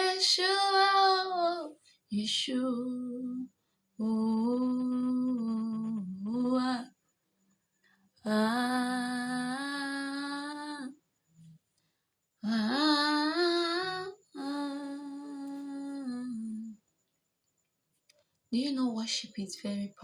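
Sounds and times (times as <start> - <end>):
person singing wordless melody: 12.4 - 16.8.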